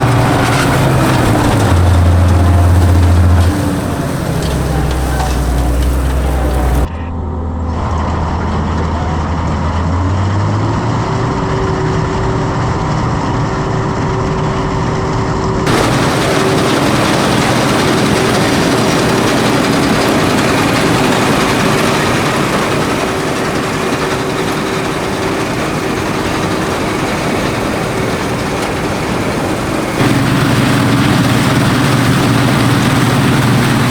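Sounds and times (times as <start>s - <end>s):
combine harvester engine drone: 0.0s - 33.9s.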